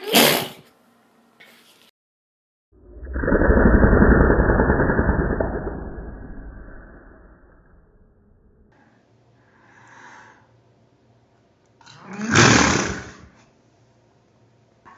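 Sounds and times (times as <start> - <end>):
woman sneezing: 0.0 - 0.6
soft breath: 8.7 - 10.6.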